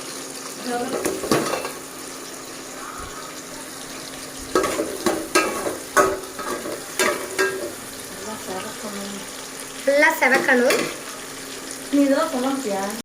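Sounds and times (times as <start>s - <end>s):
shallots sizzling in hot oil: 0.0s - 13.0s
spoon scraping a pan: 0.9s - 8.1s.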